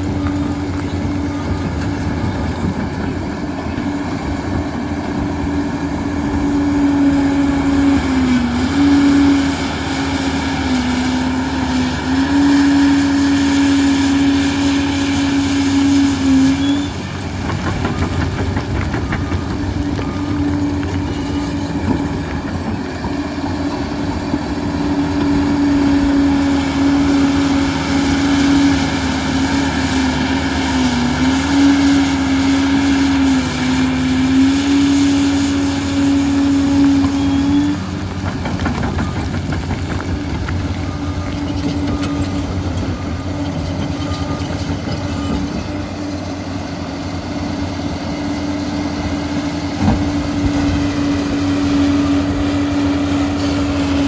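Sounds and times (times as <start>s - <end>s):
crawler dozer engine drone: 0.0s - 54.0s
dozer whine: 0.0s - 54.0s.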